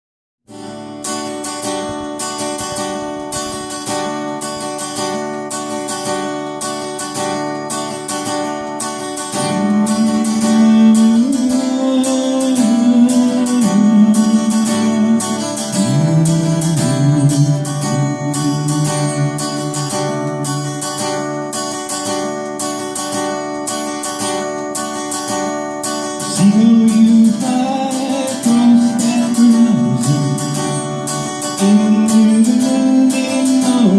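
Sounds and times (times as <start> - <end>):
acoustic guitar strumming: 0.5 - 33.9
sliding melody line: 9.3 - 22.4.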